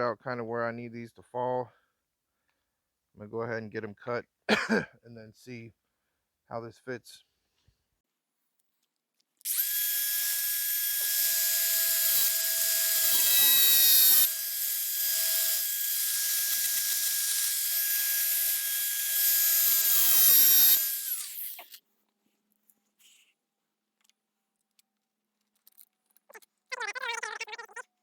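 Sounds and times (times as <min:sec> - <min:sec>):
power tool cutting metal rods: 0:09.5 - 0:21.8.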